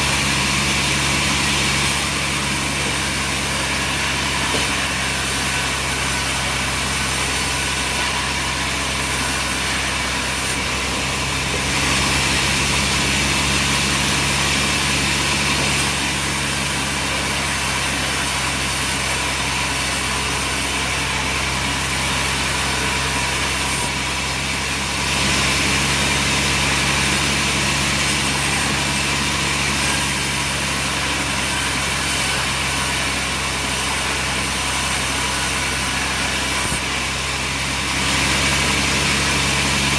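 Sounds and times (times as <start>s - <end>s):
engine hum: 0.0s - 39.9s.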